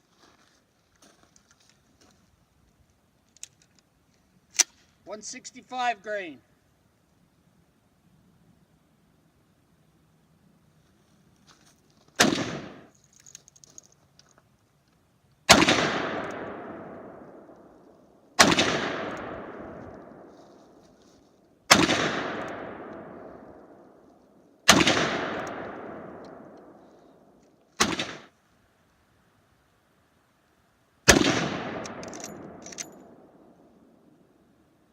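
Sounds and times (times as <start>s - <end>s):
rifle shots with echo: 12.2s - 12.9s, 15.5s - 17.8s, 18.4s - 20.4s, 21.7s - 24.0s, 24.7s - 28.3s, 31.1s - 34.0s.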